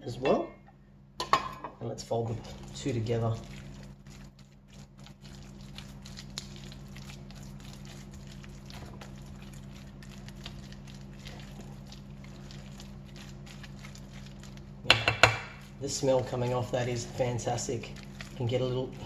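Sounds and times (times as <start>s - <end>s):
steady low hum: 0.0s - 19.0s
wet squelching: 2.2s - 19.0s.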